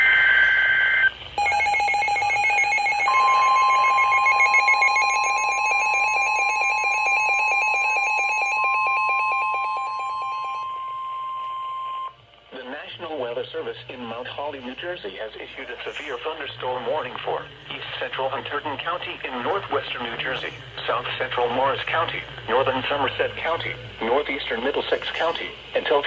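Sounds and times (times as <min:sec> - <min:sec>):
steady alert tone: 0:01.4 - 0:11.0
fast-pulsing alarm beep: 0:01.4 - 0:12.2
shrill two-tone warble: 0:01.4 - 0:12.2.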